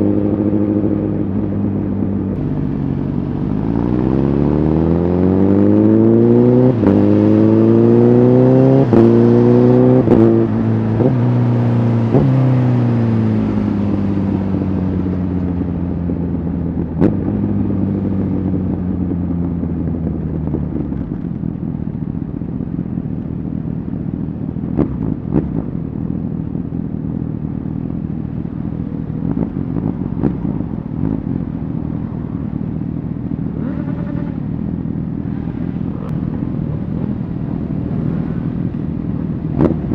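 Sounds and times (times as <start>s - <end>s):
motorcycle engine revving: 0.0s - 39.9s
rush of riding noise: 0.0s - 39.9s.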